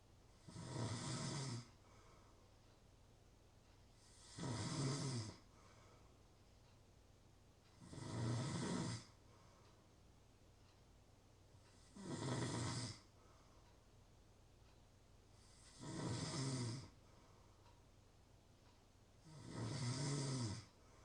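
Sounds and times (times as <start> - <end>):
person snoring: 0.4 - 1.8, 4.0 - 5.4, 7.8 - 9.2, 11.8 - 13.1, 15.4 - 17.0, 19.2 - 20.7.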